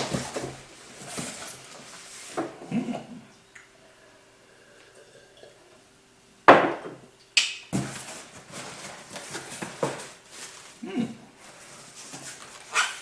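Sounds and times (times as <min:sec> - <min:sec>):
crumpled newspaper crinkling: 0:08.0 - 0:10.8.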